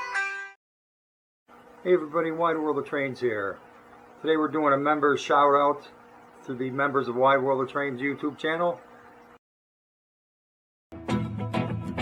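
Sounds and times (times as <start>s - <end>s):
background music: 11.0s - 12.0s.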